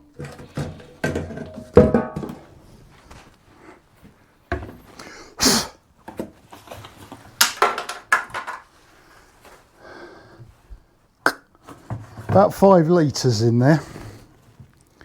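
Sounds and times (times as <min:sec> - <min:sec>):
objects knocking and clattering: 0:00.0 - 0:02.6, 0:04.5 - 0:05.0, 0:06.1 - 0:08.8.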